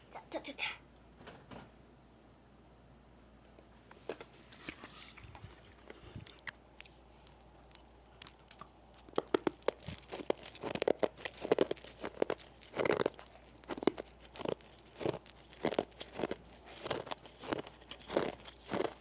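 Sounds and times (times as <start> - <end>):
hard candy crunching: 5.8 - 19.0.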